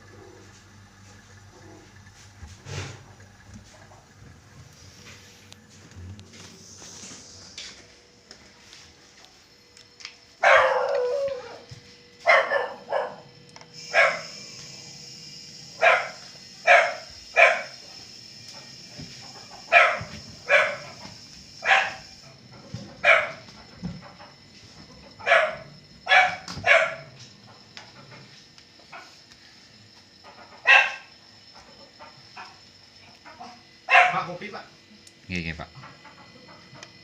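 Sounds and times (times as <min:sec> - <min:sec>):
dog barking: 0:10.4 - 0:11.6, 0:12.2 - 0:13.3, 0:13.9 - 0:14.3, 0:15.8 - 0:17.8, 0:19.7 - 0:21.0, 0:21.6 - 0:22.2, 0:23.0 - 0:23.5, 0:25.2 - 0:27.2, 0:30.6 - 0:31.1, 0:33.3 - 0:34.3.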